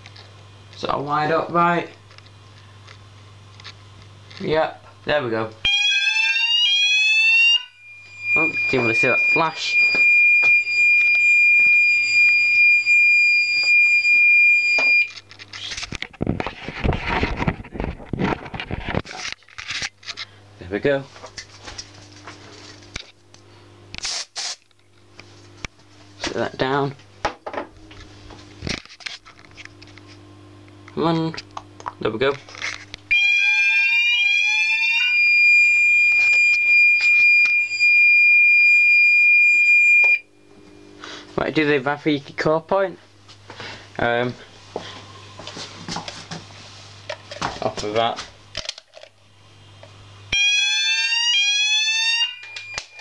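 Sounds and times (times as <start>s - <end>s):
fire alarm high-pitched tone: 5.6s - 15.2s, 33.1s - 40.9s, 50.3s - 53.0s
rustling and knocking handling noise: 44.8s - 49.1s.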